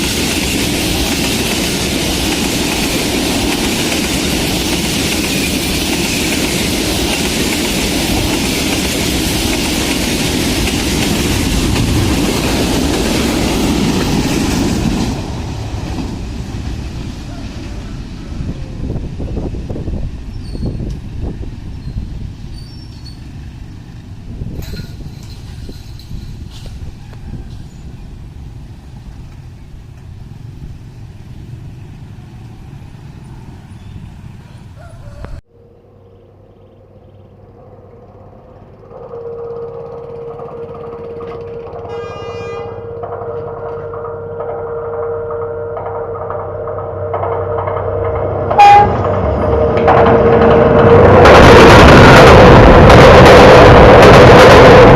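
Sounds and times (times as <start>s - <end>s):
train wheels on rails: 0.0s - 35.4s, 38.0s - 54.9s.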